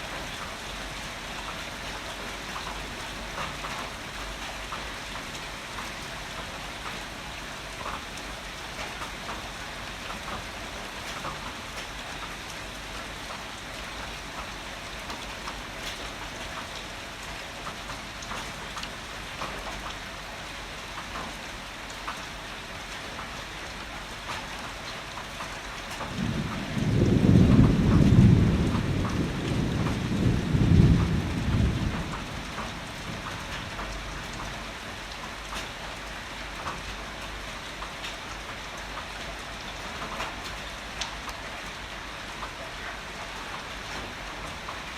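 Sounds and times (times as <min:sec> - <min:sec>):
steady rain falling: 0:00.0 - 0:44.9
low rumble of thunder: 0:26.0 - 0:34.8.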